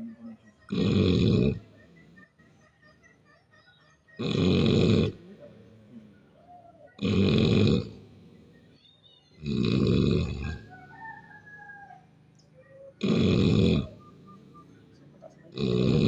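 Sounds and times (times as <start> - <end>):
person snoring: 0.7 - 1.6, 4.2 - 5.2, 7.0 - 8.0, 13.0 - 14.0, 15.6 - 16.0.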